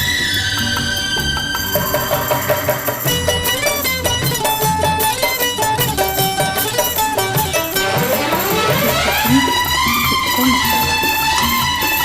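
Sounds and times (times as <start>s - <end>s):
plucked notes: 3.0s - 12.0s
steady beat: 7.2s - 11.6s
sustained melodic tones: 7.6s - 12.0s.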